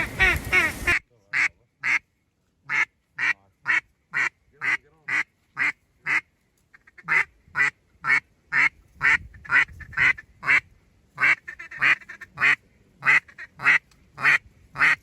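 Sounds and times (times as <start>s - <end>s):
duck quacking: 0.0s - 2.0s, 2.7s - 15.0s.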